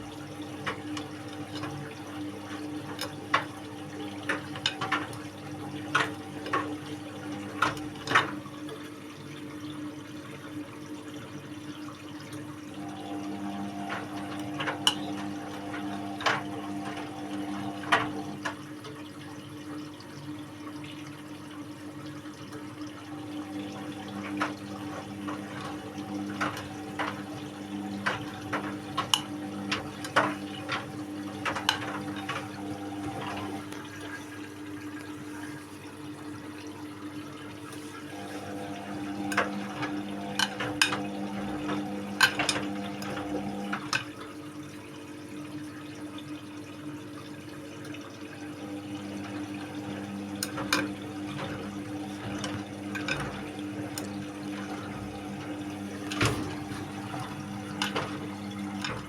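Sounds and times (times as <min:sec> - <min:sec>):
washing machine hum: 0:00.0 - 0:59.0
water sloshing in washing machine: 0:00.0 - 0:59.0.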